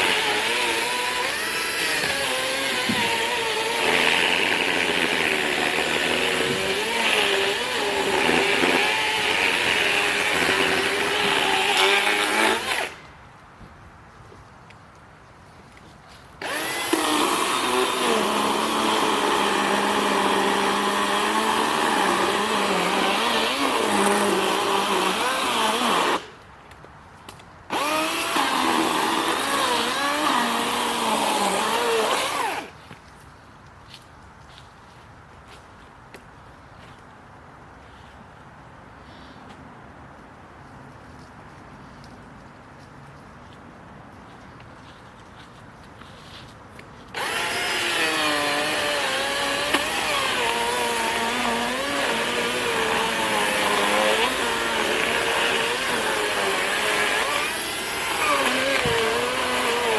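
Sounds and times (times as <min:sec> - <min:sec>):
electric chainsaw whining and cutting: 0:00.0 - 0:13.0, 0:16.4 - 0:26.3, 0:27.7 - 0:32.8, 0:47.1 - 0:59.9.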